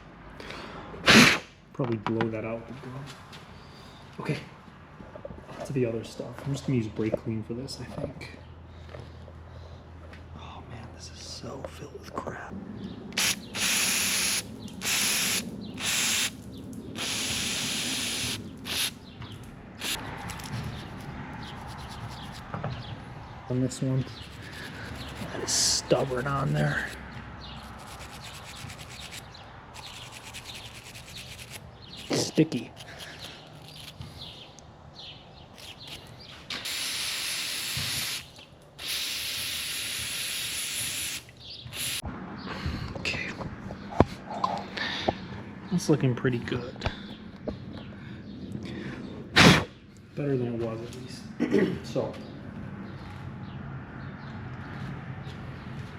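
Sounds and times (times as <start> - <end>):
aerosol can spraying: 13.2 - 16.3, 17.0 - 18.9, 36.6 - 41.2, 41.8 - 42.0.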